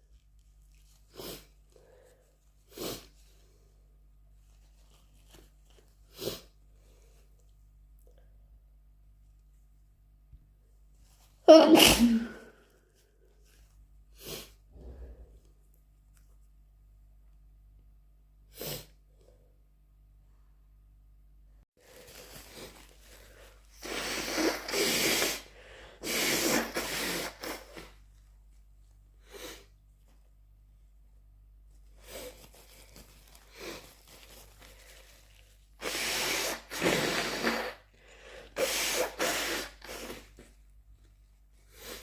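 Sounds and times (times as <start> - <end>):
person sniffing: 1.0 - 3.4, 6.1 - 6.6, 11.5 - 12.6, 14.1 - 15.4, 18.5 - 19.0, 22.4 - 28.0, 35.8 - 40.5, 41.6 - 42.0
person blowing nose: 1.1 - 1.5, 2.7 - 3.2, 6.1 - 6.6, 11.5 - 12.5, 14.2 - 15.1, 18.5 - 19.0, 23.7 - 28.0, 29.2 - 29.7, 33.5 - 34.0, 35.8 - 40.5, 41.7 - 42.0
person sneezing: 11.5 - 12.5, 23.8 - 27.9, 35.8 - 37.9, 38.5 - 40.4.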